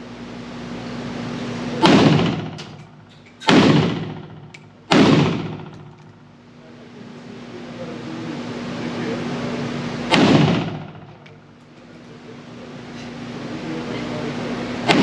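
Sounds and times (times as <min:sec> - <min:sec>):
pistol shots echoing indoors: 0:01.8 - 0:06.1, 0:10.1 - 0:11.2.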